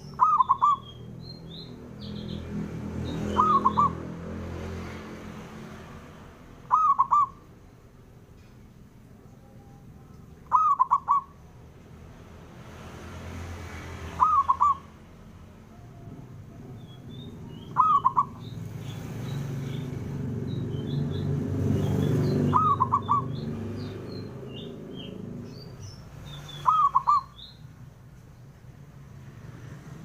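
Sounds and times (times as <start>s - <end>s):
small birds chirping: 0.0s - 11.7s, 13.9s - 30.0s
dove cooing: 0.2s - 0.8s, 3.3s - 4.0s, 6.7s - 7.4s, 10.4s - 11.4s, 14.1s - 14.9s, 17.2s - 18.4s, 22.4s - 23.4s, 26.6s - 27.4s.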